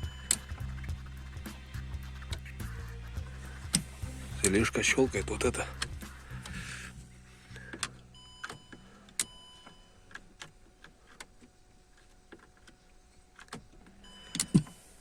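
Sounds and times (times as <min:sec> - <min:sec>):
low hum: 0:00.0 - 0:10.1
car relay clicking: 0:00.0 - 0:11.5, 0:12.3 - 0:14.8.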